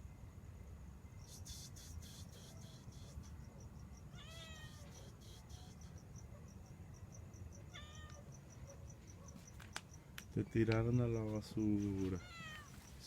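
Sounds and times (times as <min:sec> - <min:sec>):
crickets chirping: 0:00.0 - 0:13.0
cat meowing: 0:04.1 - 0:05.1, 0:07.7 - 0:08.3, 0:12.2 - 0:12.8.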